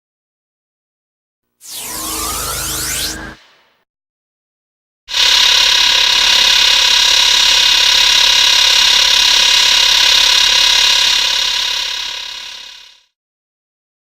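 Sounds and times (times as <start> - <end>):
electric energy beam buzz: 1.6 - 3.8, 5.1 - 13.0.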